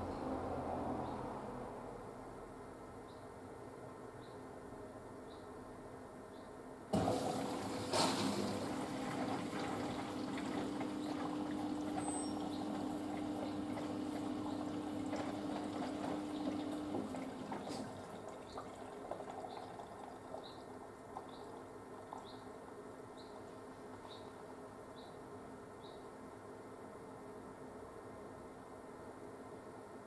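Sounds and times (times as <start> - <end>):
steady machine hum: 7.0 - 18.1
water pouring into washing machine: 7.0 - 22.3
water trickling: 7.0 - 22.5.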